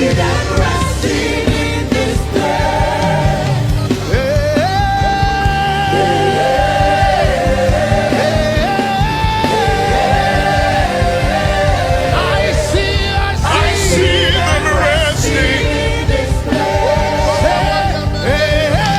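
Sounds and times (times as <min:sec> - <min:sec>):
gospel band accompaniment: 0:00.0 - 0:18.9
person singing long notes: 0:04.1 - 0:10.3.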